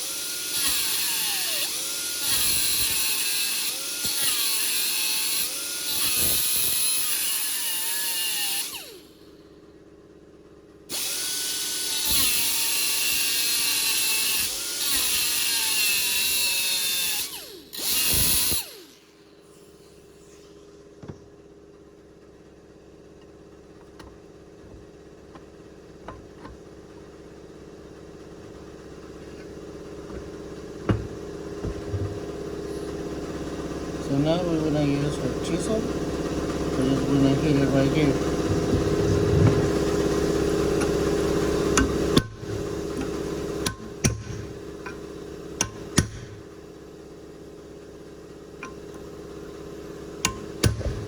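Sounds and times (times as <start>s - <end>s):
power cutting tool whining: 0.0s - 9.3s, 10.9s - 20.6s, 31.1s - 46.4s.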